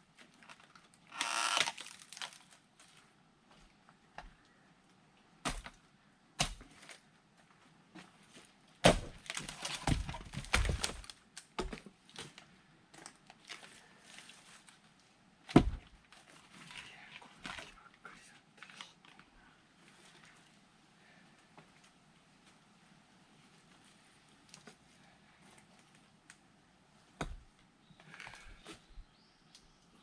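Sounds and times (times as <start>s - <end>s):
axe splitting firewood: 8.8s - 11.0s.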